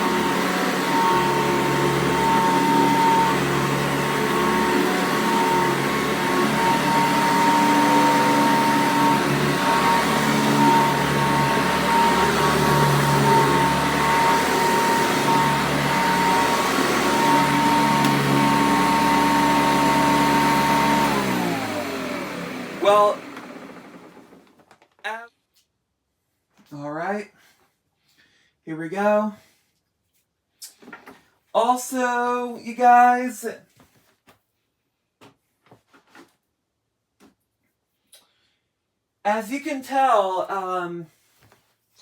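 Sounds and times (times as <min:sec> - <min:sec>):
vacuum cleaner running: 0:00.0 - 0:24.6.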